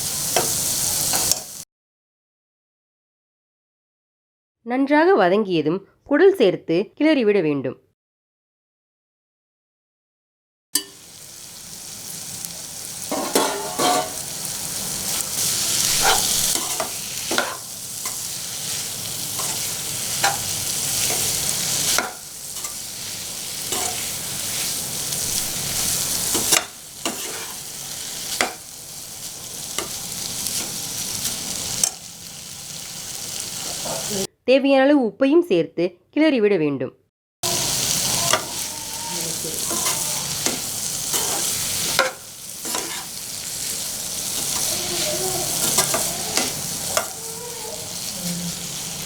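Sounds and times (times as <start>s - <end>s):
meat sizzling in oil: 0.0s - 1.6s, 10.8s - 34.3s, 37.4s - 49.0s
spatula scraping a pan: 12.9s - 32.0s, 37.5s - 49.0s.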